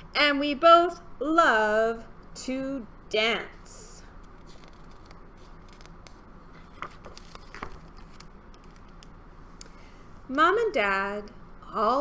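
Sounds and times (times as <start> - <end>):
soft handling clicks and rustles: 4.2 - 10.3.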